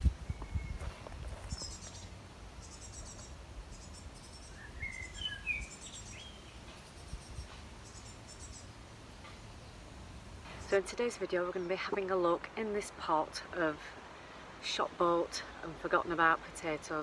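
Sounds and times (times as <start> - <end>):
whistled bird notes: 0.3 - 6.5.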